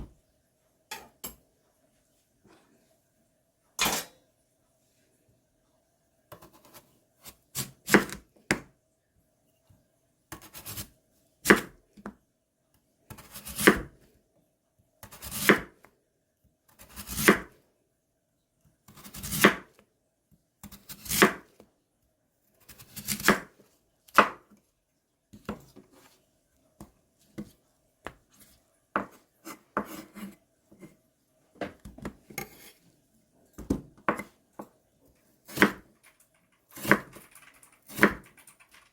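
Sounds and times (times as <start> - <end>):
knife cutting on a cutting board: 13.1 - 13.9, 16.8 - 17.5, 18.9 - 19.7, 20.6 - 21.5, 22.6 - 24.4, 27.3 - 31.0, 31.9 - 32.8, 33.6 - 34.7, 35.4 - 35.9, 36.7 - 37.2.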